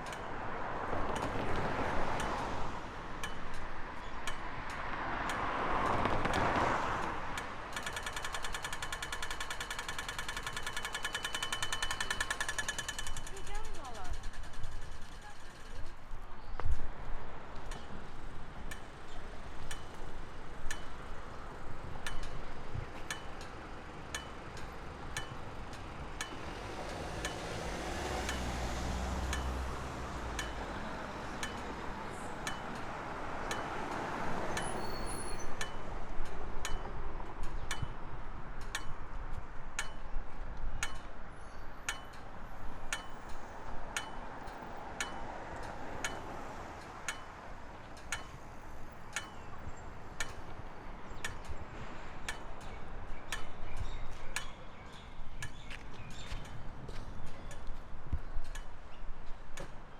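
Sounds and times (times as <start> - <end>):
street traffic: 0.0 - 59.9
vehicle passing: 4.6 - 7.4, 24.6 - 35.3.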